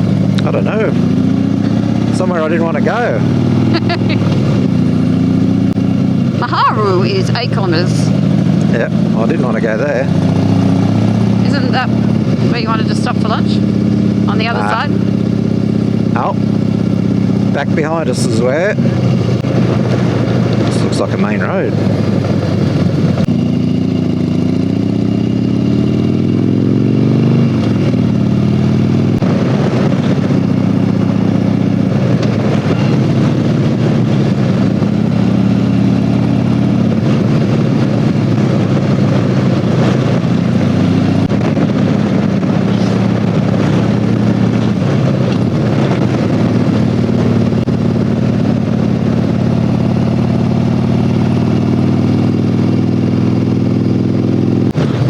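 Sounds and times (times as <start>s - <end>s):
motorcycle engine cruising: 0.0s - 55.0s.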